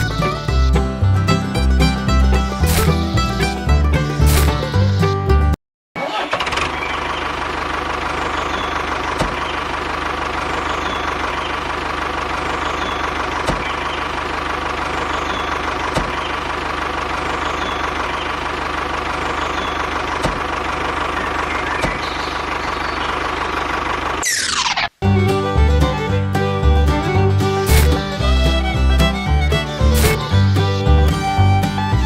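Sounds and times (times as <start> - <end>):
small engine idling: 6.0 - 24.4.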